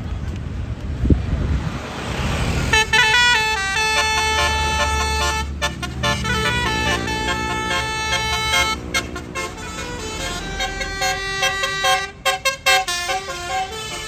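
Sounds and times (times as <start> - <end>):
bus engine running: 0.0 - 14.0
bus horn playing a melody: 2.7 - 14.0.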